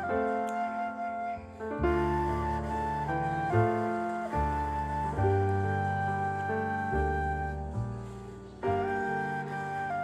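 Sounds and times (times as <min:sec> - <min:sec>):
flute-like melody: 0:00.0 - 0:10.0
piano: 0:00.0 - 0:10.0.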